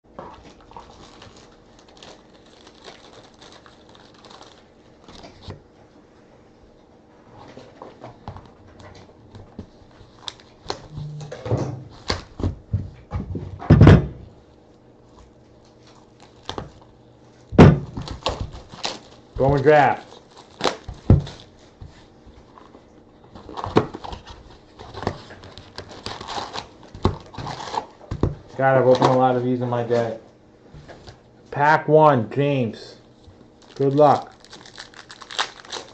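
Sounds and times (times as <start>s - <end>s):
card packs rustling: 0.1s - 5.5s, 17.9s - 30.2s, 33.3s - 35.9s.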